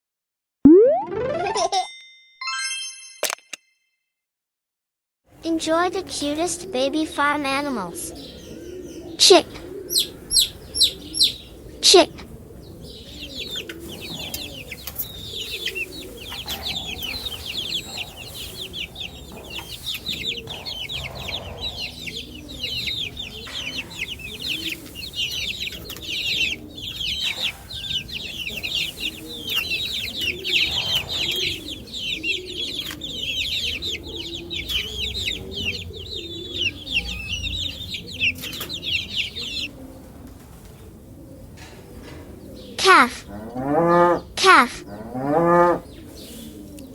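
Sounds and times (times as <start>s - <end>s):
baby chicks peeping: 5.3s - 46.9s
low clucking: 7.8s - 40.3s.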